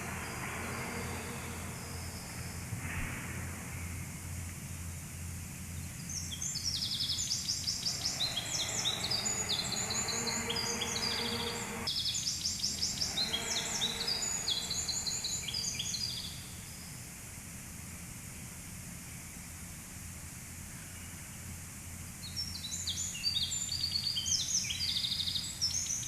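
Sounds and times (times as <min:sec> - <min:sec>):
bird chirps and trills: 0:00.0 - 0:02.8, 0:06.0 - 0:16.9
low steady hum: 0:00.0 - 0:16.9.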